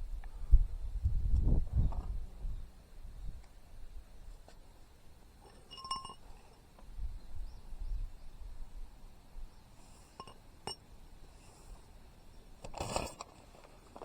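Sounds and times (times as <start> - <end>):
light metallic clinks: 5.4 - 6.7, 10.1 - 10.9.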